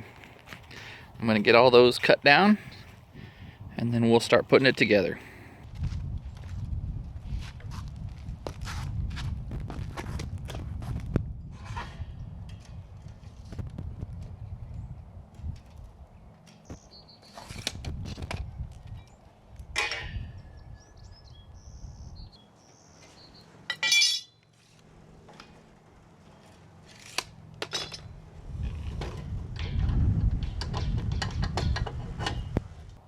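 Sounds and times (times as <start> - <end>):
loud ringing clang: 23.7 - 24.4
steel tubing clinking: 23.7 - 24.5.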